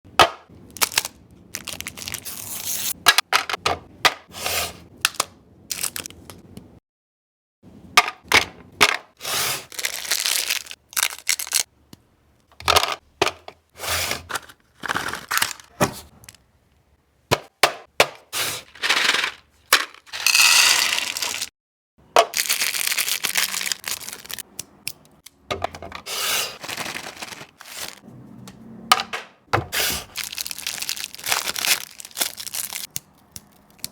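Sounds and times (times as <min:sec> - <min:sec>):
chocolate snapping and crunching: 0:09.8 - 0:11.7, 0:30.2 - 0:33.9.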